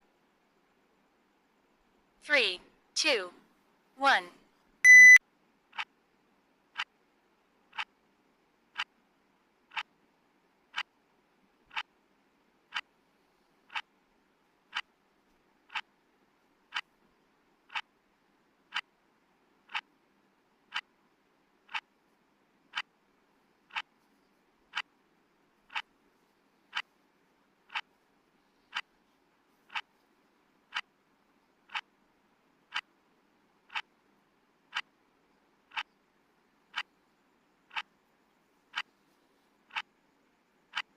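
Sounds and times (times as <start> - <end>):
timer ticking: 4.9 - 5.9, 7.7 - 7.9, 8.7 - 8.9, 9.7 - 9.9, 10.7 - 11.0, 11.7 - 11.9, 12.6 - 12.9, 13.7 - 13.9, 14.6 - 15.0, 15.7 - 15.9, 16.7 - 16.9, 17.7 - 17.9, 18.7 - 19.0, 19.7 - 19.9, 20.7 - 20.9, 21.7 - 22.0, 23.7 - 23.9, 25.7 - 25.9, 27.7 - 27.9, 28.7 - 28.9, 29.7 - 29.9, 30.7 - 30.9, 31.7 - 31.9, 32.7 - 32.9, 33.7 - 33.9, 34.7 - 34.9, 35.7 - 36.0, 36.7 - 36.9, 37.7 - 37.9
faint hiss: 11.1 - 40.7.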